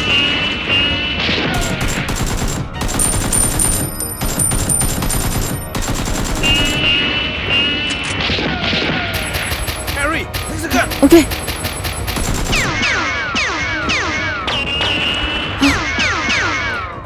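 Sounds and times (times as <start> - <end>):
background music: 0.0 - 17.0
rapid gunfire: 1.5 - 7.1, 9.2 - 13.0.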